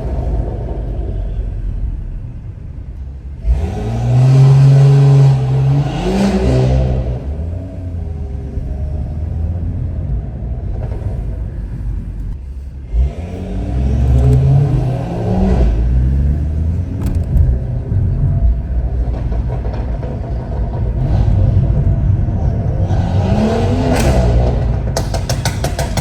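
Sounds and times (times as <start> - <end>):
car engine accelerating: 0.0 - 26.0.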